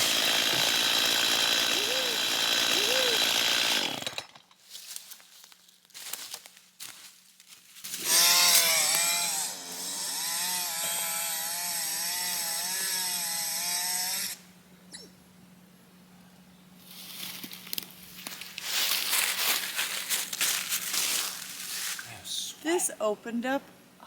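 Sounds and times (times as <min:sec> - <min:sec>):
chainsaw cutting wood: 0:00.0 - 0:04.6, 0:08.0 - 0:14.4
rustling crackle: 0:04.6 - 0:08.0, 0:16.8 - 0:22.1.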